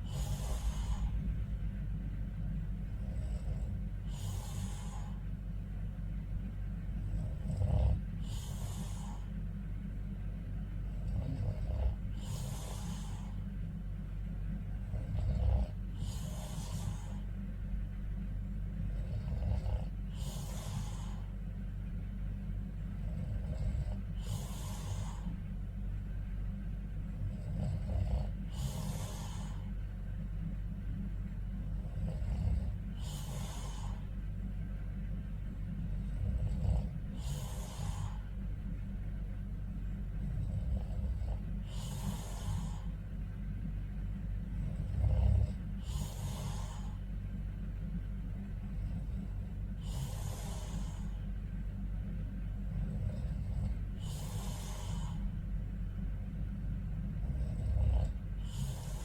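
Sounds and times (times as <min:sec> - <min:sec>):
man snoring: 0:00.0 - 0:01.5, 0:02.9 - 0:05.2, 0:07.0 - 0:09.4, 0:10.9 - 0:13.5, 0:14.8 - 0:17.3, 0:18.8 - 0:21.3, 0:22.9 - 0:25.4, 0:27.1 - 0:29.8, 0:31.6 - 0:34.1, 0:35.8 - 0:38.3, 0:40.2 - 0:43.0, 0:44.4 - 0:47.0, 0:48.5 - 0:51.3, 0:52.6 - 0:55.4, 0:57.0 - 0:59.0
low hum: 0:00.0 - 0:59.0.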